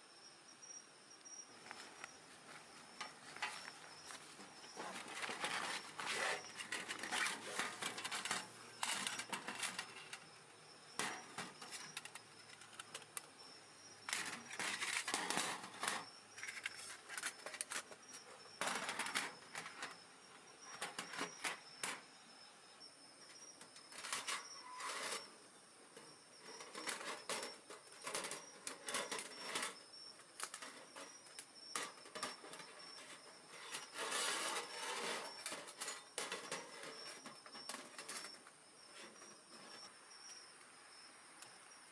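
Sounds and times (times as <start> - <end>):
insects trilling: 0.0 - 41.9
wood fire crackling: 1.5 - 22.1, 22.9 - 40.8.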